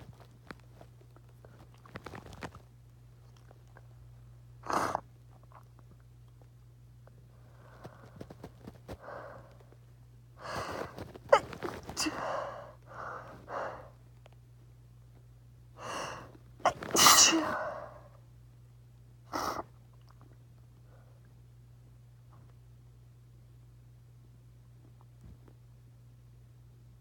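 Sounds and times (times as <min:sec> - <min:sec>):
faint breaths: 0:07.3 - 0:09.8, 0:10.4 - 0:14.0
person sneezing: 0:10.5 - 0:12.7, 0:15.9 - 0:18.0.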